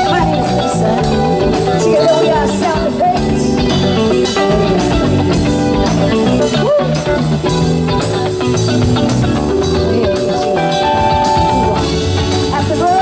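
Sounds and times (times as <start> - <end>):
bass guitar: 0.0 - 13.0
drum kit beat: 0.0 - 13.0
electric guitar: 0.0 - 13.0
keyboard: 0.0 - 13.0.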